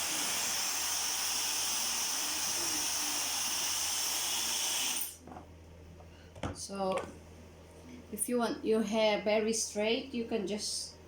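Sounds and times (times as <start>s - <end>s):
hair dryer blowing: 0.0s - 5.2s.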